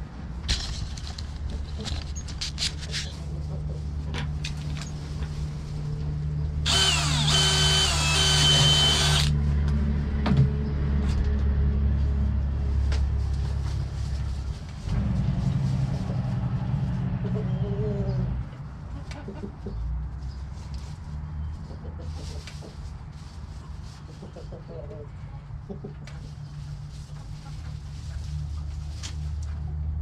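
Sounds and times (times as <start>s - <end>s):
power drill boring into bucket: 6.7s - 9.3s
chickens clucking: 17.1s - 19.9s, 21.5s - 22.9s, 23.7s - 28.7s.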